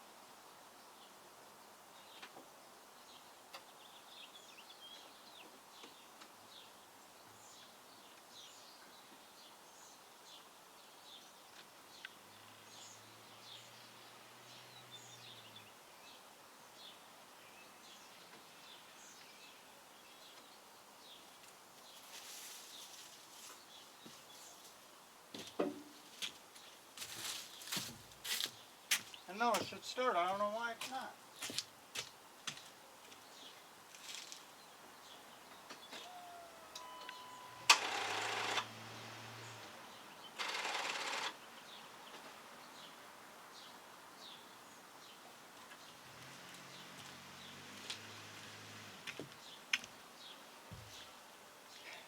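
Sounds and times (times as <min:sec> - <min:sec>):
faint birds chirping: 0:00.0 - 0:52.0
starter solenoid rapid clicking: 0:37.1 - 0:38.9, 0:40.4 - 0:41.4.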